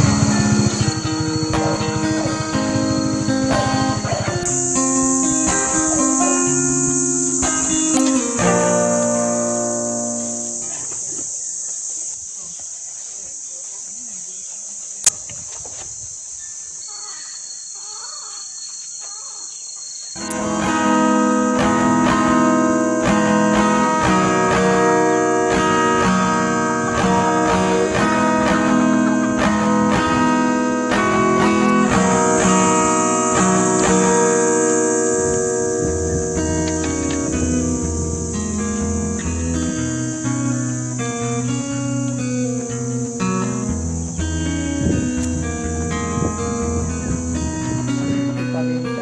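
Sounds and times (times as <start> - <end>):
acoustic guitar music: 0.0 - 11.6, 20.1 - 49.0
insects chirring: 0.0 - 49.0
sharp click: 45.2 - 45.4.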